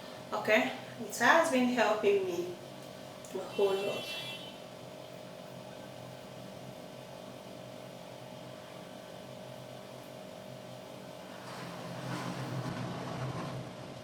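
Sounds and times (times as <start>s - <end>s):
thin steady tone: 0.0s - 11.1s
faint background hum: 0.0s - 12.7s
loud rushing noise: 11.4s - 14.0s.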